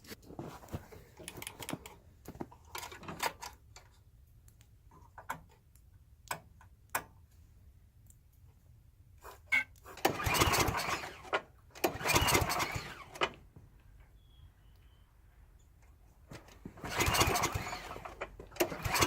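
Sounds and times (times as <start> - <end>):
clicks of handling parts and tools: 0.0 - 7.2.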